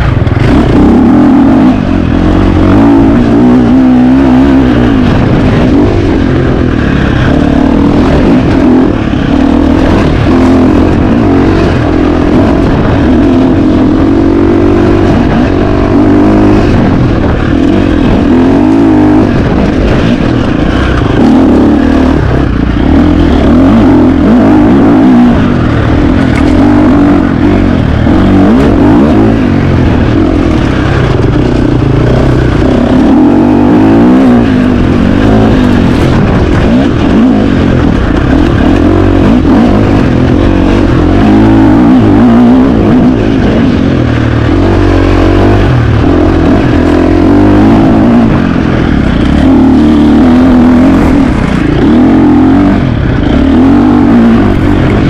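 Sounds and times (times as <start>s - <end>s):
dirt bike engine revving: 0.0s - 55.0s.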